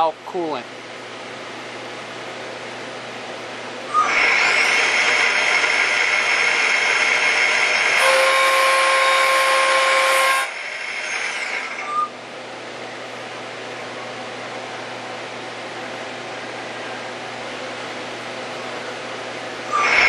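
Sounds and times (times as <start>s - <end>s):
machine hum: 0.0s - 20.0s
lathe spindle whine: 3.8s - 12.1s, 19.4s - 20.0s
thread mill cutting steel: 3.9s - 12.1s, 19.7s - 20.0s.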